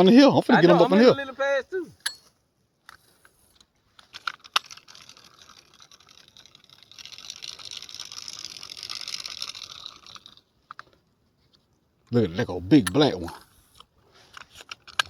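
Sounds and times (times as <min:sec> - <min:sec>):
sharp clicks of reel: 0:04.0 - 0:10.5
fishing reel whirring: 0:04.1 - 0:10.5.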